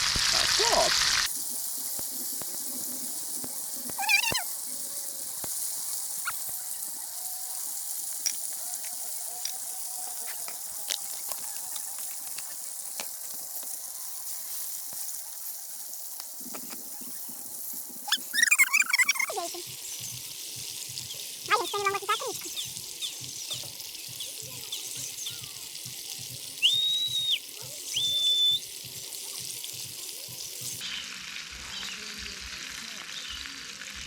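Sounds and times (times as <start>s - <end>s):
campfire crackling and popping: 0.0s - 30.8s
food sizzling: 0.0s - 34.0s
high warbling call: 4.0s - 4.5s, 18.0s - 19.6s.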